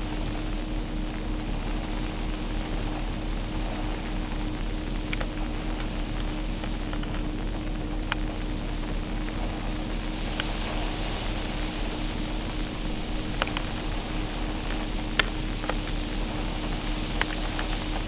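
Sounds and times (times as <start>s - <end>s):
constant hum: 0.0s - 18.0s
strong wind blowing: 0.0s - 18.0s
wind buffeting microphone: 0.0s - 18.0s
faint clicks: 4.9s - 7.3s, 8.0s - 8.4s, 13.2s - 13.7s, 17.1s - 18.0s.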